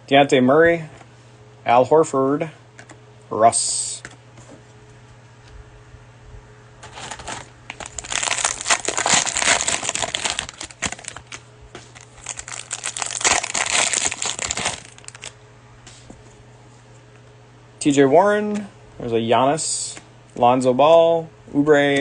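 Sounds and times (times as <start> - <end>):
cellophane wrapper crinkling: 6.8 - 15.4.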